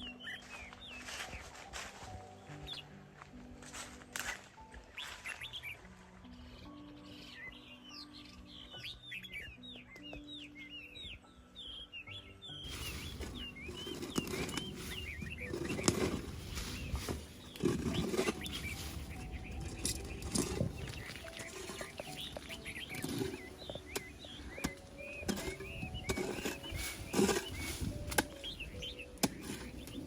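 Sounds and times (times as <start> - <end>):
small birds chirping: 4.3 - 30.0
rustling: 12.7 - 30.0.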